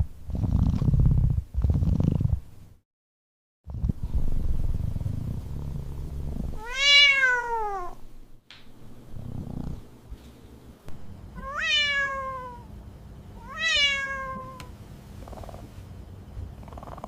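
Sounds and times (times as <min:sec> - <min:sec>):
low purring: 0:00.0 - 0:02.4, 0:03.7 - 0:08.1, 0:09.0 - 0:09.9, 0:14.5 - 0:15.7, 0:16.5 - 0:17.0
kitten meowing: 0:06.6 - 0:08.0, 0:11.4 - 0:12.7, 0:13.4 - 0:14.7.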